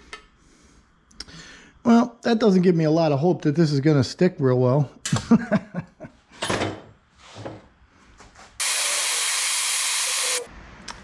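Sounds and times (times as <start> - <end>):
gas torch hissing: 8.6 - 10.5.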